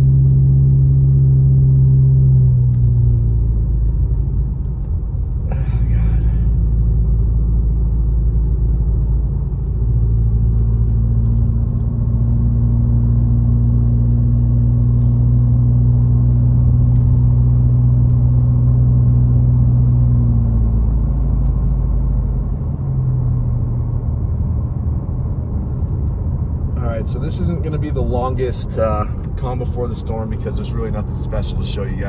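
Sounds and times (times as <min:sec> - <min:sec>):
car engine hum: 0:00.0 - 0:32.0
road rumble: 0:00.0 - 0:32.0.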